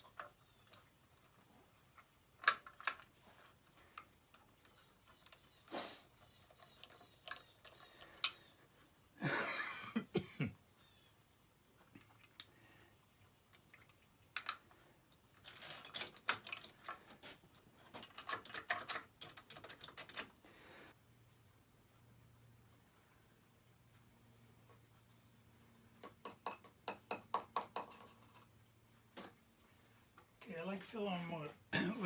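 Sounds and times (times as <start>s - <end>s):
metal engine parts clattering: 15.4s - 17.0s.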